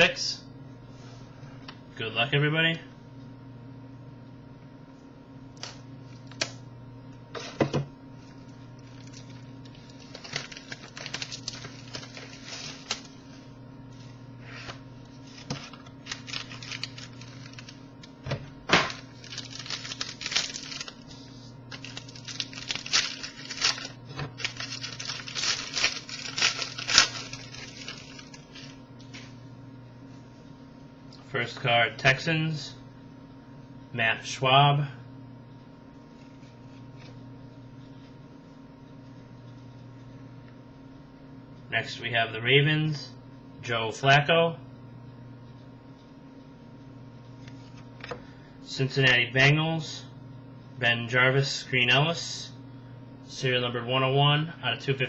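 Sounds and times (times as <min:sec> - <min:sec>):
steady low hum: 0:00.0 - 0:55.0
wrapper tearing and crinkling: 0:08.8 - 0:13.2, 0:15.3 - 0:17.8, 0:18.7 - 0:21.1, 0:21.7 - 0:28.8.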